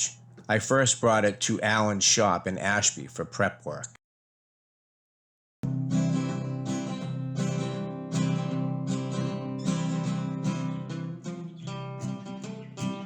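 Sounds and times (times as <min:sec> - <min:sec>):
acoustic guitar strumming: 0:05.6 - 0:13.0.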